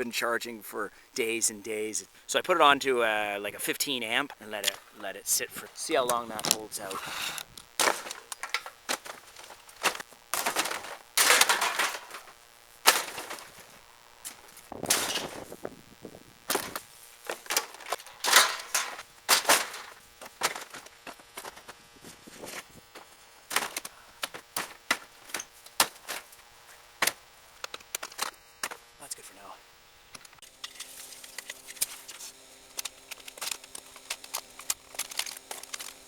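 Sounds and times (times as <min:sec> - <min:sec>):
metal scraping: 0:05.9 - 0:15.6, 0:16.5 - 0:20.7.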